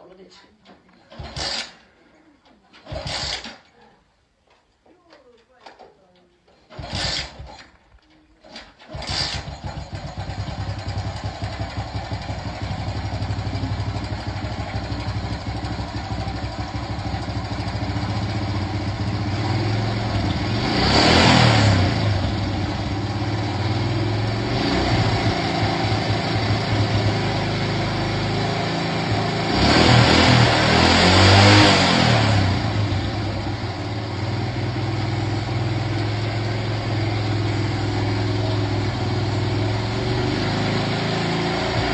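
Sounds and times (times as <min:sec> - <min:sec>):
small engine running: 0:01.1 - 0:01.8, 0:02.8 - 0:03.6, 0:06.7 - 0:07.6, 0:08.9 - 0:33.6.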